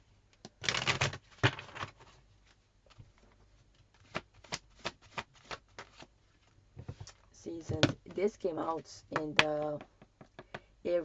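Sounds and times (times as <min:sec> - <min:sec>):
cards shuffling: 0:00.6 - 0:07.2.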